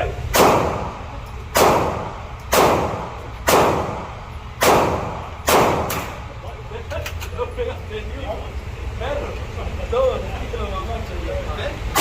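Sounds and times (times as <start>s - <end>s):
rifle shots with echo: 0.3s - 6.3s.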